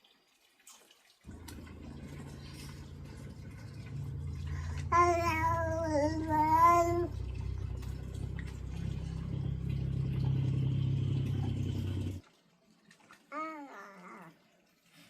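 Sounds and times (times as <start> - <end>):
steady low hum: 1.3 - 12.2
baby vocalizing: 4.4 - 8.8, 13.3 - 14.4.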